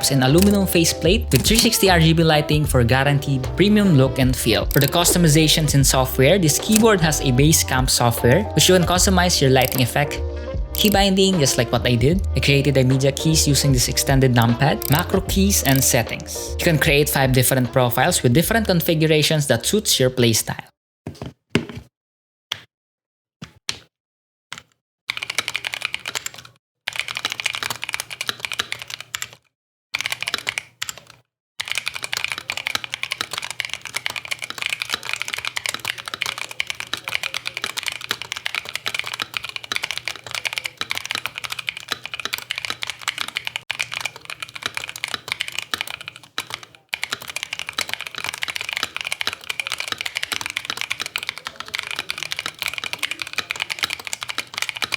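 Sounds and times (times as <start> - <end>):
mechanical keyboard typing: 0.0 - 2.0, 3.8 - 10.1, 10.8 - 11.6, 12.5 - 16.3, 25.1 - 29.4, 30.0 - 54.9.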